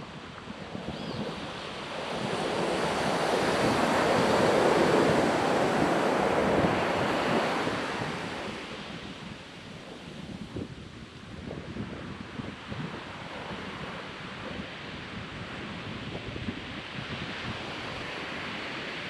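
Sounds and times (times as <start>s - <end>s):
ocean wave breaking: 1.3s - 8.7s.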